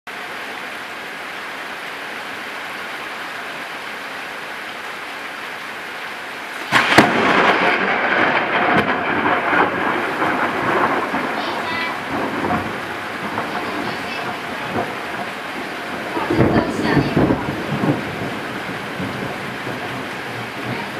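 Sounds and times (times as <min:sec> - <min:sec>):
heavy rain: 0:00.1 - 0:20.9
thunder crack and rumbling: 0:06.6 - 0:20.9.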